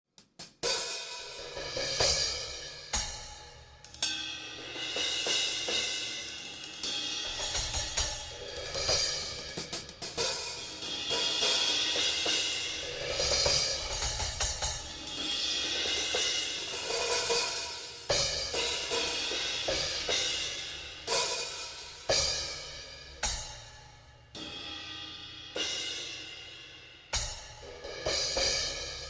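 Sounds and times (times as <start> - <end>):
hi-hat strikes: 0.2 - 29.0
drum and snare hits: 7.2 - 15.2.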